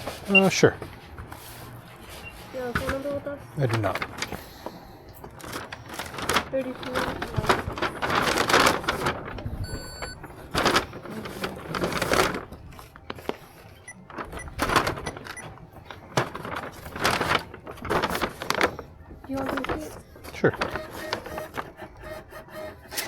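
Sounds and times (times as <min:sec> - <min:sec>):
plastic bag rustling and clattering: 0:00.0 - 0:22.0
short electronic beep: 0:09.6 - 0:10.2.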